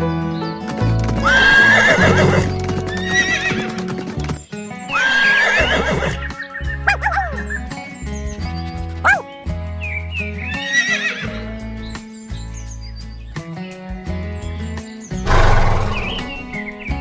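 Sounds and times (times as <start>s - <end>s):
hooves clip-clopping: 0.6s - 6.3s, 15.3s - 17.0s
horse whinnying: 1.2s - 3.8s, 4.9s - 6.3s, 10.7s - 11.3s, 15.3s - 16.6s.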